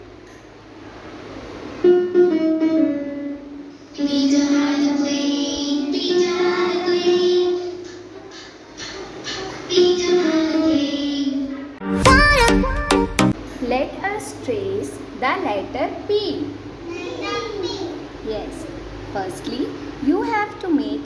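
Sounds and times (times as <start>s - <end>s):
musical backing: 1.6s - 13.4s
child singing: 4.0s - 12.8s.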